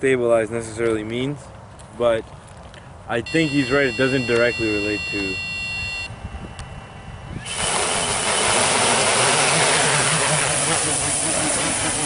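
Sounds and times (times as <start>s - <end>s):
drone propellers whirring: 3.3s - 12.0s.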